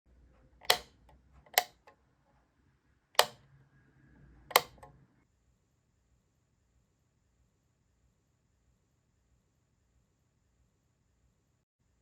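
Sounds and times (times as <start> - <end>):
sharp clicks of hard objects: 0.6 - 2.0, 3.2 - 3.4, 4.5 - 5.0.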